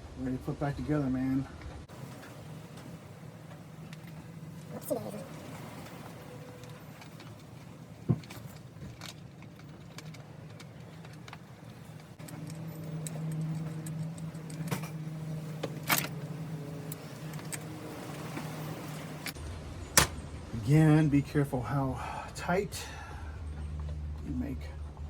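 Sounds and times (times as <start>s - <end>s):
metal tools clicking and clinking: 3.8s - 17.7s.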